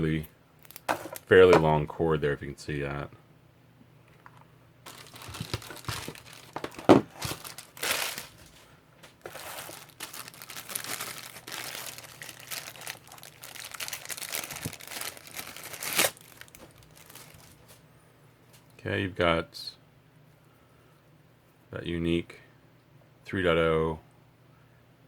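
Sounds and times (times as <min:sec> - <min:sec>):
plastic packaging crinkling: 0:04.9 - 0:17.8.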